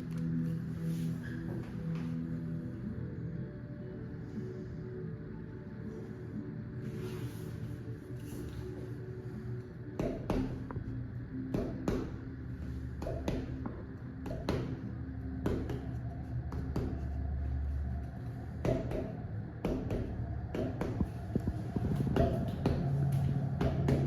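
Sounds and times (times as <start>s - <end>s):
low steady hum: 0.0s - 24.0s.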